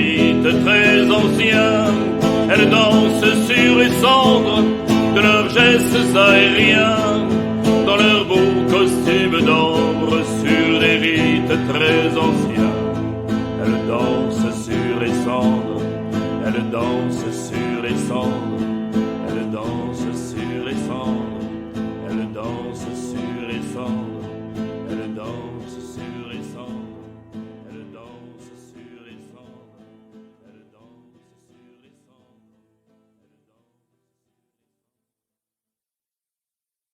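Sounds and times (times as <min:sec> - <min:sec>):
plucked-string music: 0:00.0 - 0:27.7.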